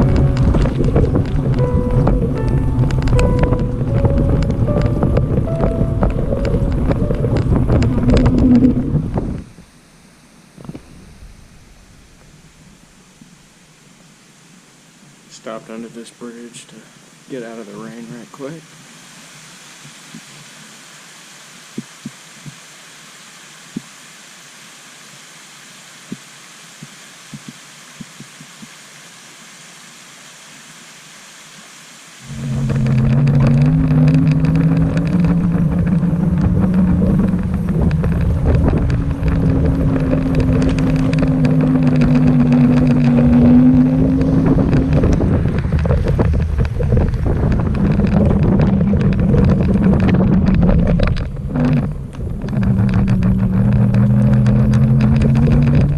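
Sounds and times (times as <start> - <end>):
wind buffeting microphone: 0.0 - 9.7, 32.2 - 55.9
road noise with low hum: 0.0 - 18.4, 31.3 - 55.9
steady hiss: 0.0 - 55.9
sharp ticks: 32.3 - 55.9.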